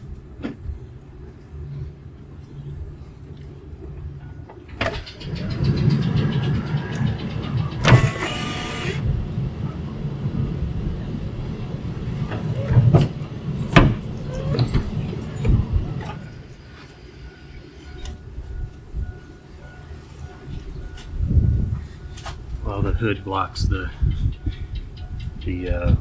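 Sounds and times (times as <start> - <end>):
truck low rumble: 2.8 - 16.9
sharp clicks and knocks: 6.9 - 9.0.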